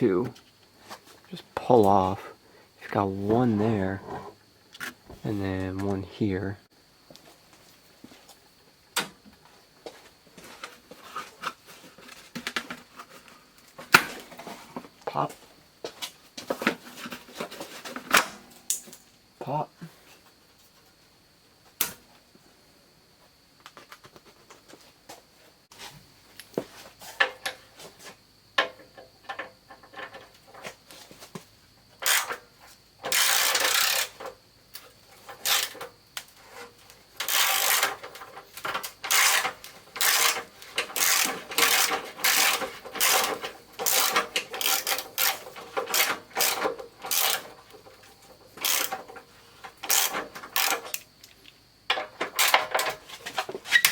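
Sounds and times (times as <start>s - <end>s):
ratchet wrench clicking: 32.0s - 32.4s, 33.0s - 34.3s, 35.4s - 35.8s, 37.2s - 38.2s, 39.0s - 47.5s, 48.6s - 49.1s, 49.8s - 51.0s.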